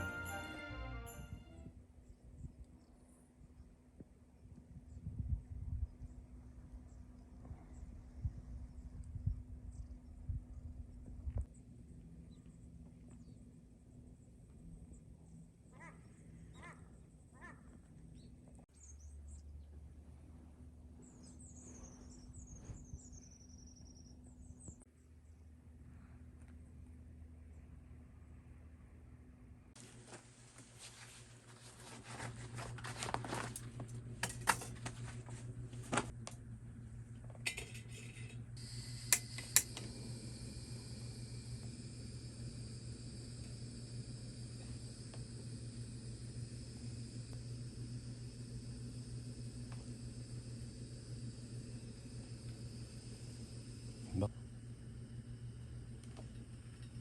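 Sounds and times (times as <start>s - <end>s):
steady low hum: 0.0s - 57.0s
distant animal calls: 15.7s - 17.8s.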